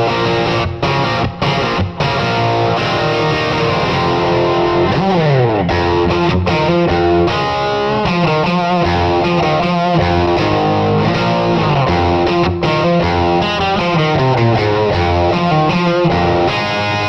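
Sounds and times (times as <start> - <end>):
distorted electric guitar: 0.0 - 17.0
steady bass line: 0.0 - 17.0.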